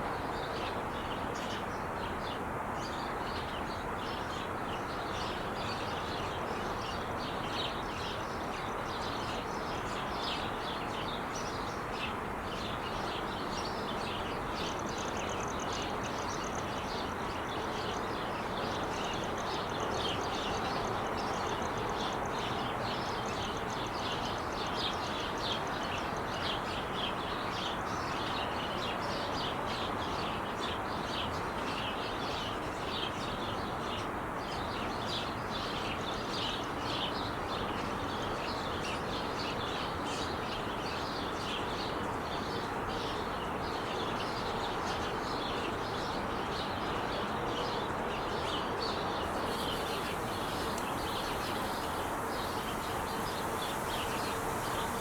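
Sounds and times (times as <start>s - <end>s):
freeway traffic rushing: 49.2s - 55.0s
small birds chirping: 49.2s - 55.0s.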